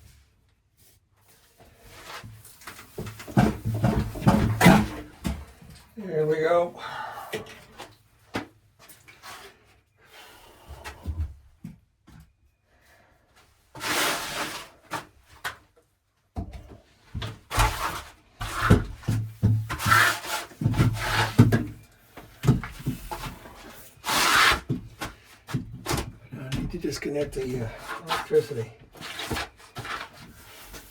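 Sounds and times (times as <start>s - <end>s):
rubbing and scraping handling noise: 0.0s - 6.6s, 13.8s - 15.7s, 16.9s - 30.9s.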